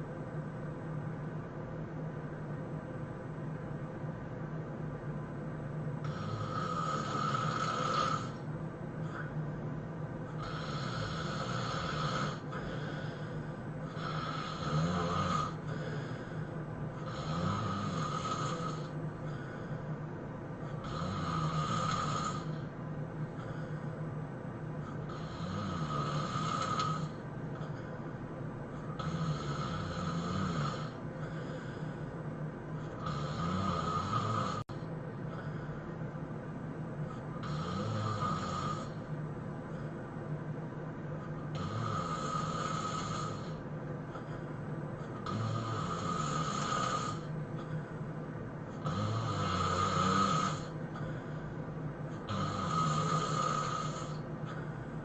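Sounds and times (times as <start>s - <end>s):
person snoring heavily: 6.0s - 8.4s, 9.0s - 9.3s, 10.3s - 19.8s, 20.7s - 22.7s, 24.8s - 28.0s, 28.7s - 32.1s, 32.8s - 35.8s, 37.1s - 39.1s, 41.4s - 47.9s, 48.7s - 51.6s, 52.2s - 55.0s.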